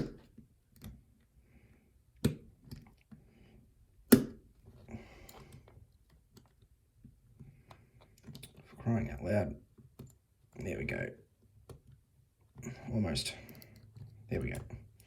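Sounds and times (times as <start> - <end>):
lock parts clicking and knocking: 2.1 - 3.2, 5.2 - 8.8, 9.7 - 10.6.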